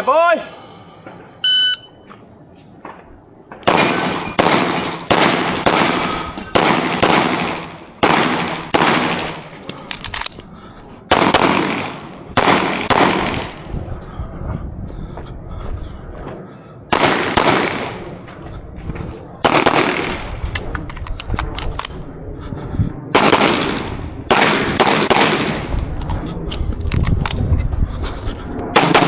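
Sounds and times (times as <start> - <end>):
pistol shots: 3.6 - 9.5, 11.1 - 13.6, 16.9 - 18.1, 19.4 - 20.7, 23.1 - 25.7, 28.8 - 29.0.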